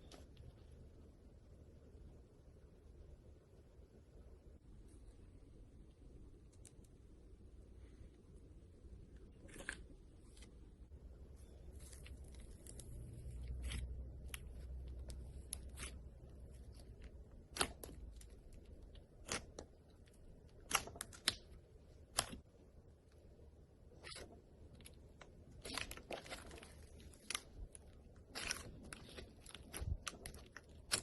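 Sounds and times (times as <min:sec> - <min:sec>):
slime popping and crackling: 0:11.8 - 0:22.4, 0:25.5 - 0:31.0.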